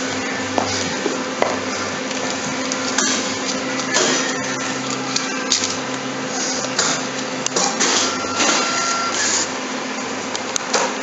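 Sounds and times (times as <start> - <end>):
whirring hissing bursts: 0.0 - 10.4
machine humming: 0.0 - 11.0
thin machine whine: 0.0 - 11.0.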